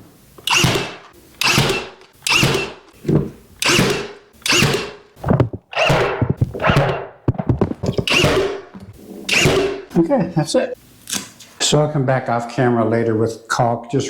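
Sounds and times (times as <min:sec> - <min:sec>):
nail gun firing: 0:00.5 - 0:02.8, 0:03.6 - 0:05.0, 0:05.7 - 0:07.1, 0:08.1 - 0:08.6, 0:09.3 - 0:09.8.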